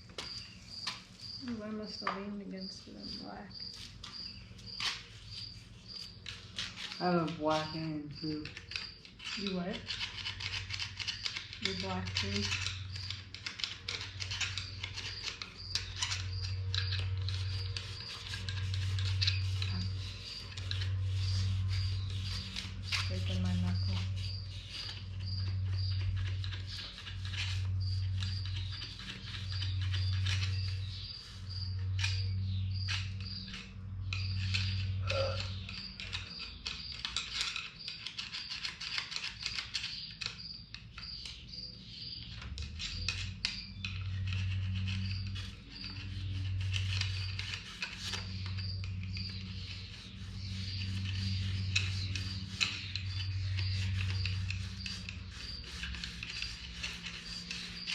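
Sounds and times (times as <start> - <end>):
emery cloth scrubbing metal: 1.0 - 32.4, 44.1 - 57.9
low pulsing hum: 16.2 - 35.8, 42.9 - 57.9.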